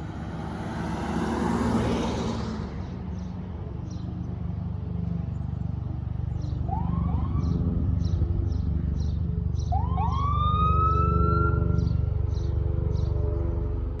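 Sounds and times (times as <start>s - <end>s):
truck engine rumble: 0.0s - 14.0s
fire engine siren: 6.6s - 8.0s, 9.6s - 13.8s.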